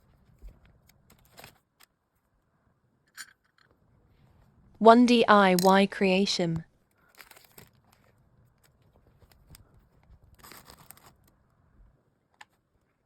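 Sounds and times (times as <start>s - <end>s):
packaging rustling: 10.1s - 11.3s.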